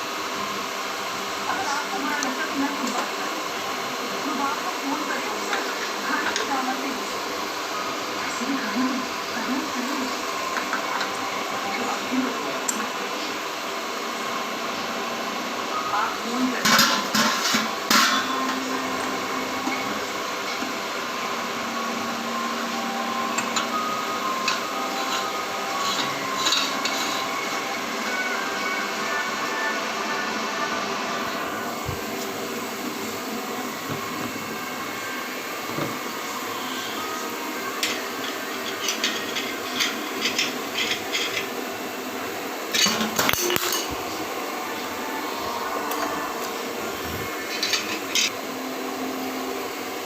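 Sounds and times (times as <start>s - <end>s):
electric meat mincer running: 0.0s - 50.0s.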